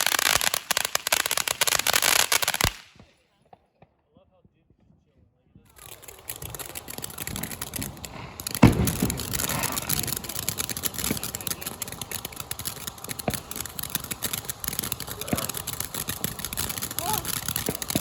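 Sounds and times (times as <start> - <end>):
fireworks crackling hiss and pops: 0.0 - 3.7, 5.6 - 18.0
firework bang: 5.7 - 18.0.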